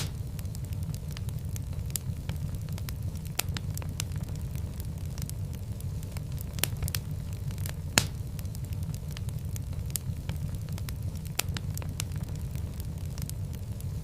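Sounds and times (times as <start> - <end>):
sharp pops: 0.0 - 0.3, 7.9 - 8.3
fire crackling: 0.0 - 14.0
low rumble of flames: 0.0 - 14.0.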